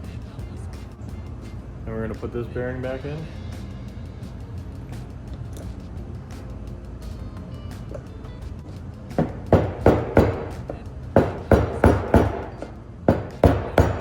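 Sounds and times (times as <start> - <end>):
hammer striking metal: 9.1 - 14.0.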